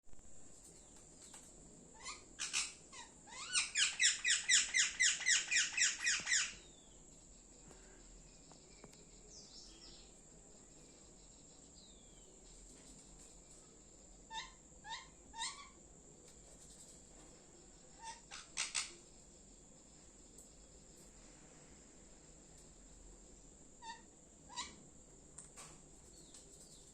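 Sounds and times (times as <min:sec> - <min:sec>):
parrot chirping: 0:02.0 - 0:06.7, 0:14.3 - 0:15.8, 0:18.0 - 0:19.0, 0:23.8 - 0:24.8.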